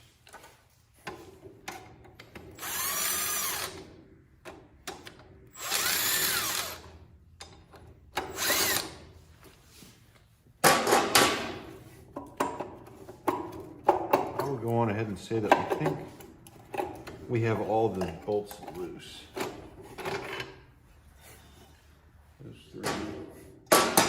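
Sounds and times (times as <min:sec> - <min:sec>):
power drill whining: 0:02.5 - 0:03.9, 0:05.5 - 0:07.0, 0:08.2 - 0:09.1.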